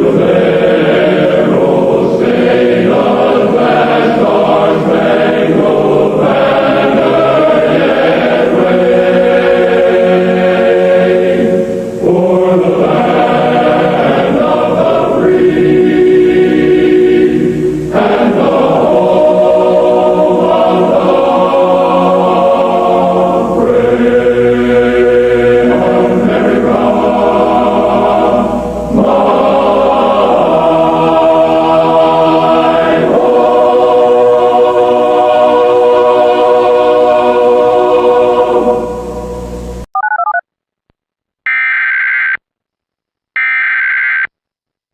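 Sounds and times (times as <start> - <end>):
choir singing sustained chords: 0.0 - 39.9
brief electronic tone: 39.0 - 40.4.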